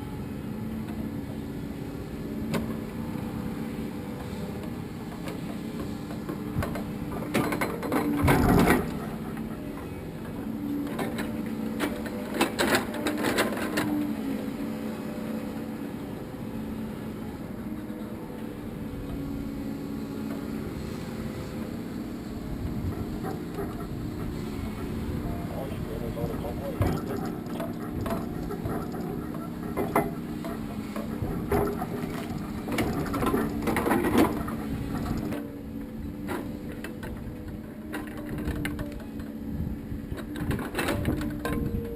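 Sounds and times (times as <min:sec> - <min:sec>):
engine running: 0:00.0 - 0:41.9
machinery humming: 0:00.0 - 0:41.9
metallic clicks and clanks: 0:26.3 - 0:35.4.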